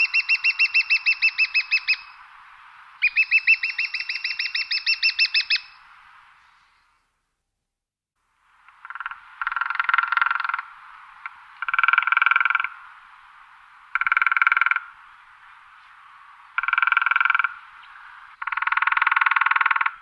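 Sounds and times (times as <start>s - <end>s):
woodpecker drumming on tree: 8.7s - 12.8s, 13.9s - 14.9s, 16.6s - 17.6s, 18.3s - 20.0s.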